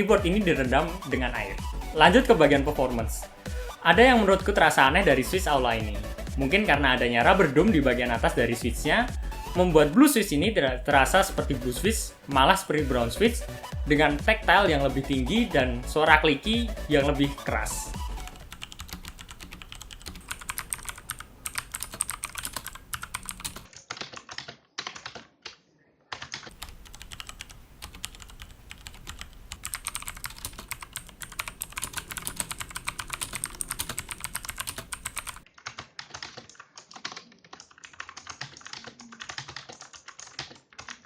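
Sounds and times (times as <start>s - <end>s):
clicky keyboard typing: 17.2s - 41.0s.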